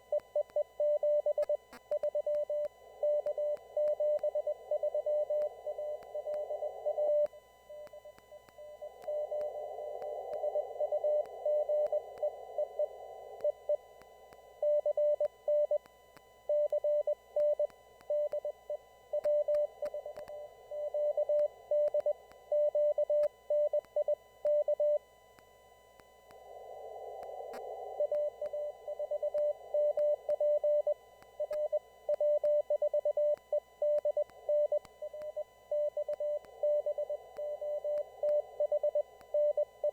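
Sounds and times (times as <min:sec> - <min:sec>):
morse code tone: 0:00.0 - 0:13.9.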